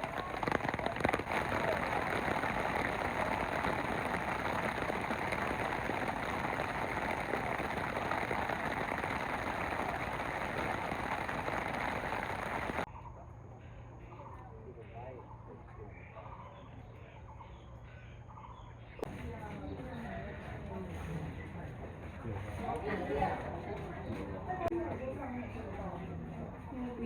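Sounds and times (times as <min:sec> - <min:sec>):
sharp pattering ticks: 0:00.0 - 0:12.9
steady rain falling: 0:00.0 - 0:12.9.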